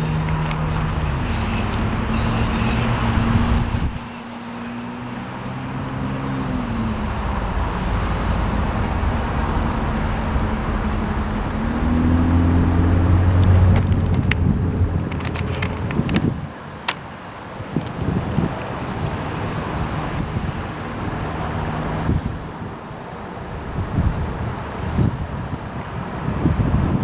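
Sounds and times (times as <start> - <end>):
diesel locomotive engine running: 0.0 - 22.6
sharp clicks: 13.2 - 17.2.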